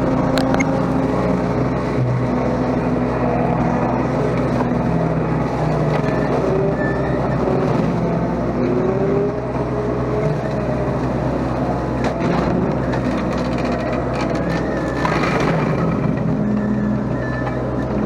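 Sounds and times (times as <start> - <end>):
excavator engine under load: 0.0 - 18.0.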